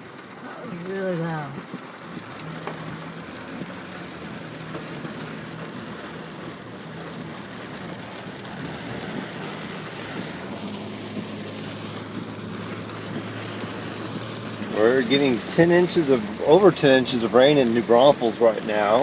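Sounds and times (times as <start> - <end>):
car engine hum: 0.0 - 19.0
heavy rain on car roof: 0.0 - 19.0.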